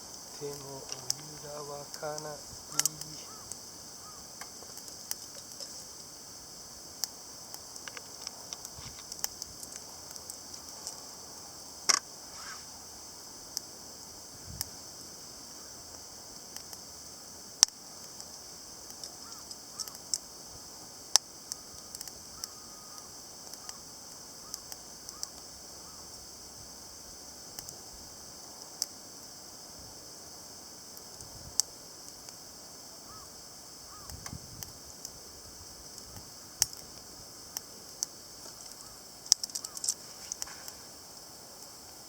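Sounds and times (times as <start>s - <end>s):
steady high hiss: 0.0s - 42.0s
wood fire crackling and popping: 0.0s - 42.0s.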